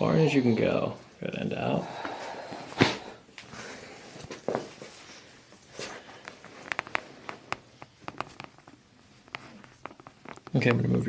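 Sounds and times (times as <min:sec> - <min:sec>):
clothing rustling: 0:02.0 - 0:10.7.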